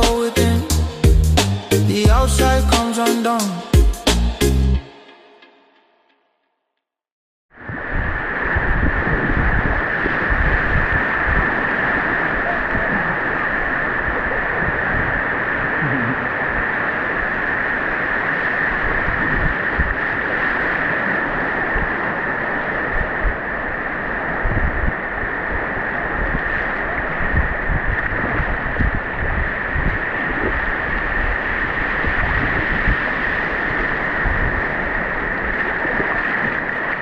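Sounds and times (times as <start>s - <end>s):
wind buffeting microphone: 7.6s - 37.0s.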